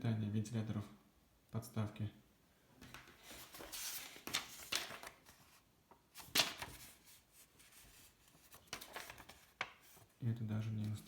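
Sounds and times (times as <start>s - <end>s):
packaging rustling and crinkling: 2.8s - 5.6s, 6.2s - 10.1s.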